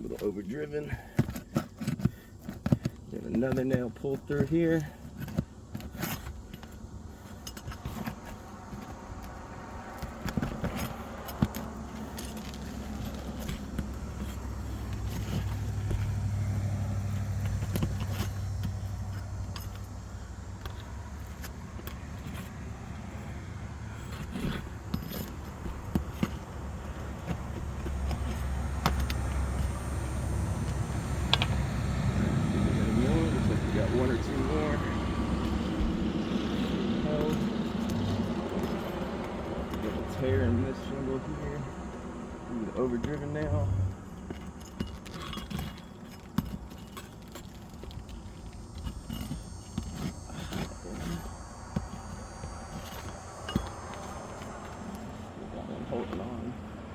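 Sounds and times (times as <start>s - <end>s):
roofing tool clicking and scraping: 0.0s - 56.9s
steady low rumble: 9.0s - 56.9s
metal tools clicking and knocking: 43.1s - 52.1s.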